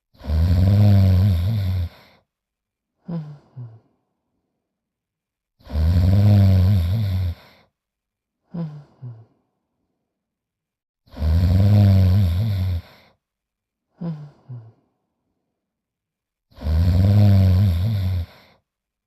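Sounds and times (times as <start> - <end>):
cartoon character snoring: 0.1 - 2.2, 3.0 - 3.9, 5.6 - 7.7, 8.5 - 9.3, 11.1 - 13.2, 14.0 - 14.8, 16.5 - 18.6.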